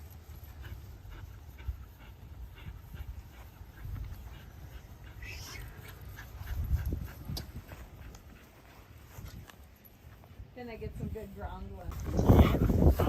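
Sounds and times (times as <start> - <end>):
dog panting: 0.0 - 9.5.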